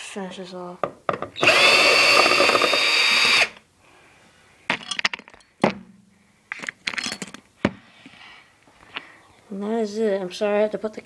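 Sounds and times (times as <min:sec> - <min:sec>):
power drill whining: 0:01.4 - 0:03.6
handling clicks and knocks: 0:06.5 - 0:07.8.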